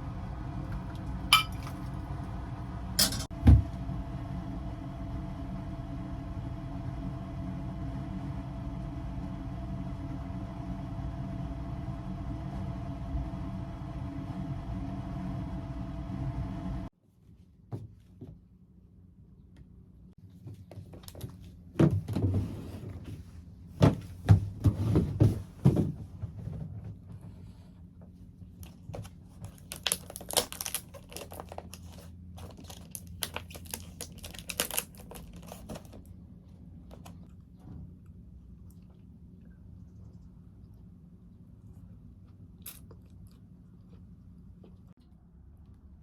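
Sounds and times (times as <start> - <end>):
steady rumble: 0.0 - 16.9
knocks and thumps of handling: 23.8 - 27.2.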